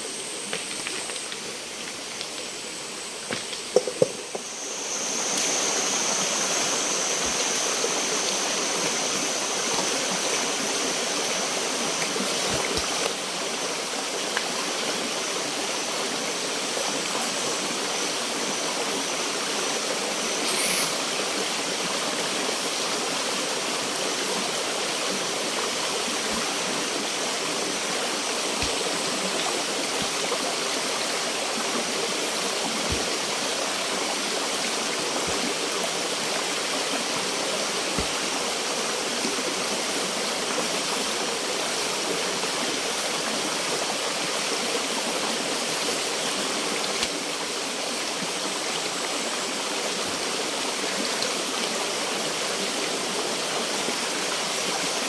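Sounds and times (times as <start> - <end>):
high-pitched whine: 0.0 - 13.5, 16.2 - 21.7
stream water flowing: 0.0 - 55.0.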